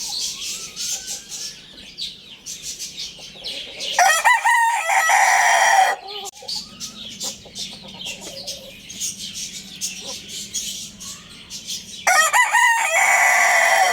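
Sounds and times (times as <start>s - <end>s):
soft clucks and chirps: 0.0s - 13.9s
rooster crowing: 3.8s - 6.3s, 12.0s - 13.9s.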